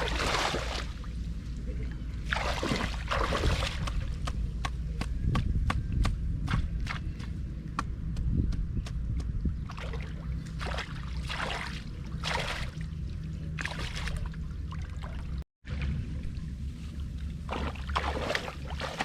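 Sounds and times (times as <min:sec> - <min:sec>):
water splashing: 0:00.0 - 0:01.2, 0:02.2 - 0:04.3, 0:09.7 - 0:12.9, 0:17.5 - 0:19.0
steady low rumble: 0:00.0 - 0:19.0.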